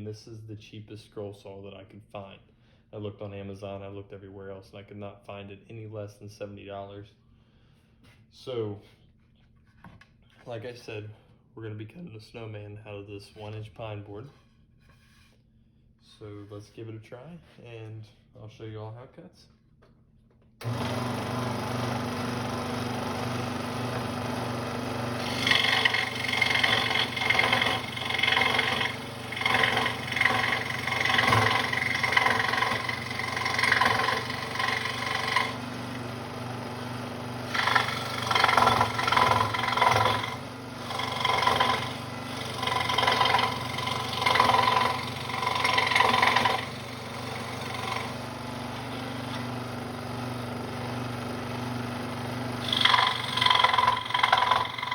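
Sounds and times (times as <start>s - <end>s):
saw blade rasping through wood: 20.6s - 54.9s
scroll saw motor hum: 20.6s - 54.9s.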